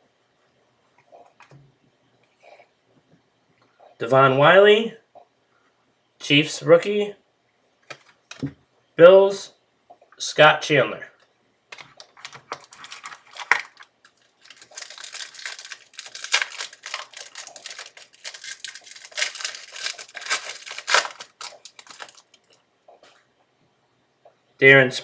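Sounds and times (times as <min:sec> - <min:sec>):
plastic wrapper crinkling and tearing: 0:11.8 - 0:22.6
cards clicking: 0:14.5 - 0:22.5.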